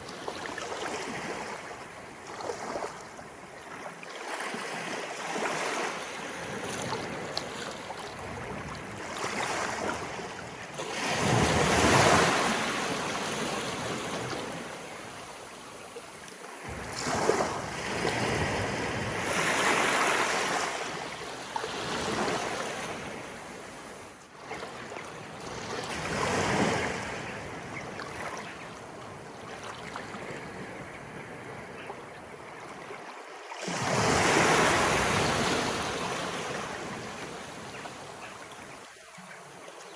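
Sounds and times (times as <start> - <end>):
water splashing and flowing: 0.0 - 14.9, 16.3 - 27.2
small waves breaking: 0.0 - 39.9.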